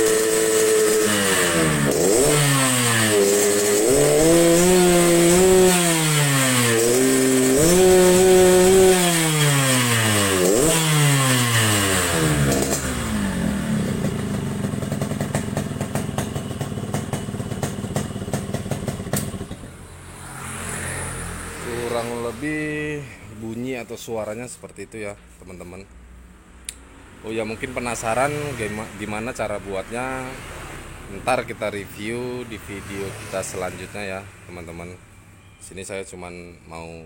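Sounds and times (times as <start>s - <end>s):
motorcycle engine revving: 0.0s - 23.2s, 27.4s - 34.2s
rough motorcycle idle with pops: 13.9s - 19.7s.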